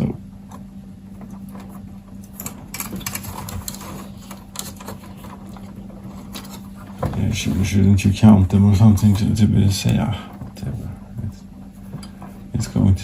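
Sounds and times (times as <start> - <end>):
steady low hum: 0.0 - 13.0
wires and connectors rattling: 0.0 - 13.0.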